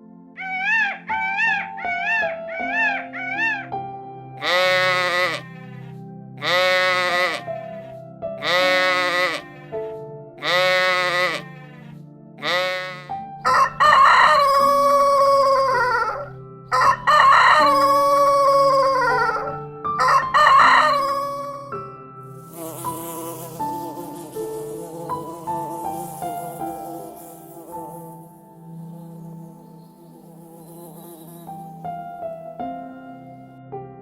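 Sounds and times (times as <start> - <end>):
background music: 0.0 - 34.0
short animal calls: 4.4 - 9.8, 10.4 - 13.1
rooster crowing: 12.4 - 21.7.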